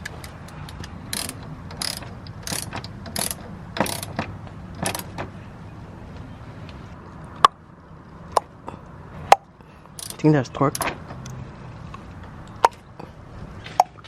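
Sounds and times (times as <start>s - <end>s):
ratchet wrench clicking: 0.2s - 4.2s, 4.8s - 5.1s, 9.9s - 10.9s
sharp metallic clinks: 9.9s - 10.9s.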